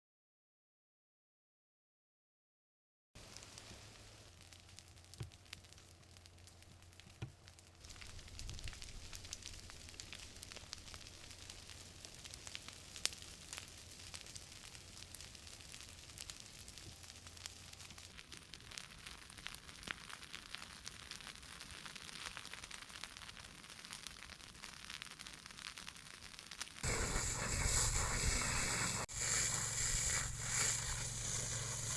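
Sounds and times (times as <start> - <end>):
fire crackling and popping: 3.2 - 31.9.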